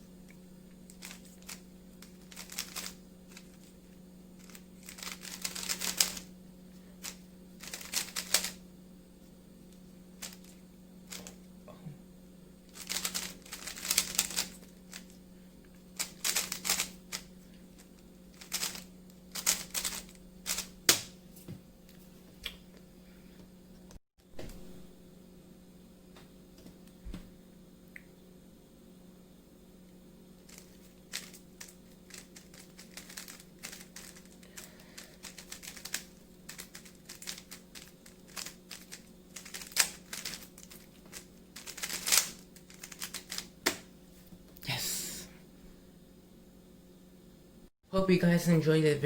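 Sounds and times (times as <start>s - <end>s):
faint steady hum: 0.0s - 49.0s
speed cube layers clacking: 2.2s - 3.5s, 4.4s - 6.2s, 7.6s - 8.5s, 12.8s - 15.1s, 16.0s - 17.2s, 18.4s - 18.8s, 19.4s - 20.7s, 30.5s - 34.4s, 35.2s - 43.5s.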